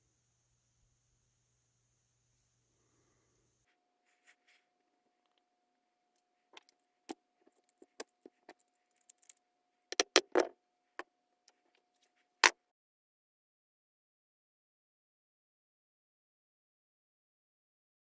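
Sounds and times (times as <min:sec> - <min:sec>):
faint steady hum: 0:00.0 - 0:12.4
small hard parts clicking: 0:07.5 - 0:10.5.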